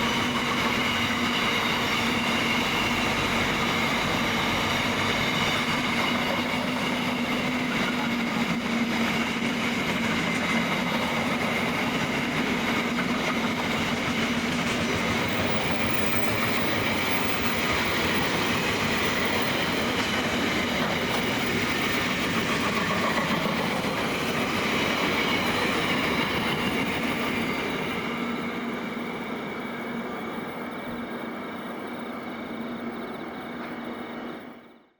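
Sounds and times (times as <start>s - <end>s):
steel wheels rolling on rail: 0.0s - 34.8s
steady whining tones: 0.0s - 34.9s.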